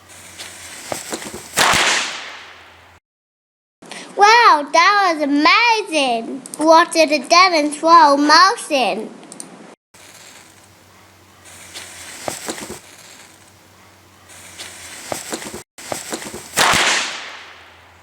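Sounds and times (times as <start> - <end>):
firecrackers crackling pops: 0.0 - 3.0, 10.0 - 18.0
loud firecracker bang: 0.0 - 3.0, 11.4 - 13.4, 14.3 - 18.0.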